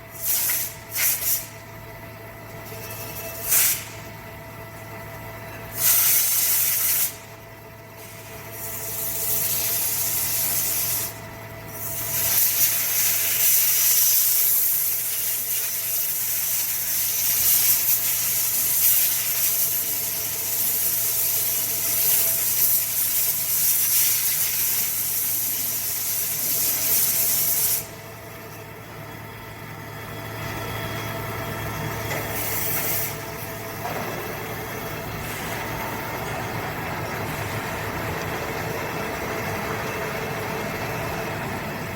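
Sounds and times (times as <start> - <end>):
steady machine hum: 0.0 - 41.9
machine cutting hiss: 0.1 - 1.5, 3.4 - 4.0, 5.7 - 7.3, 8.0 - 28.0, 32.0 - 41.8.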